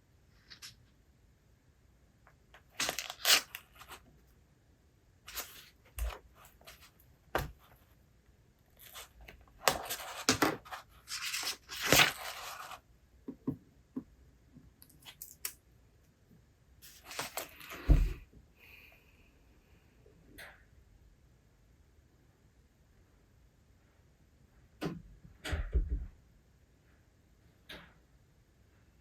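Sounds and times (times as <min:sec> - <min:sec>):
book pages rustling: 0:02.6 - 0:04.1, 0:05.3 - 0:07.9, 0:08.8 - 0:12.8, 0:16.8 - 0:18.0.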